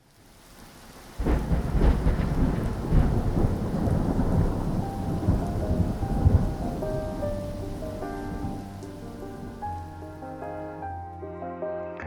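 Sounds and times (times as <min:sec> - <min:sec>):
steady rain: 0:00.0 - 0:11.0
thunder rumbling: 0:00.9 - 0:10.5
soft music notes: 0:05.3 - 0:12.0.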